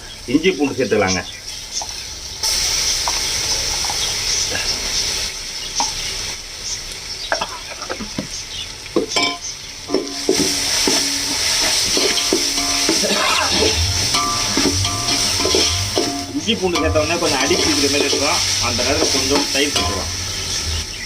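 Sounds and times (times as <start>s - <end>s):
onions sizzling in hot oil: 0.0s - 21.0s
ladle scraping a pot: 9.9s - 20.1s.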